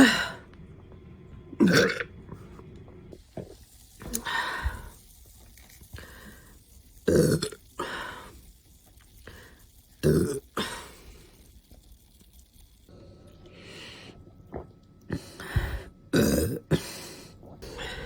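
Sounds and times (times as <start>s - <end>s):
woman burping: 1.6s - 2.1s, 16.1s - 16.9s.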